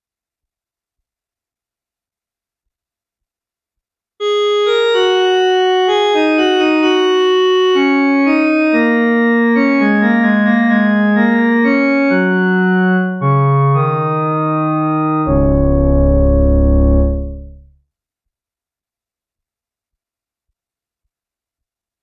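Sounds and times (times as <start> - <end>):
synthesizer piano-like notes: 4.2 - 17.8.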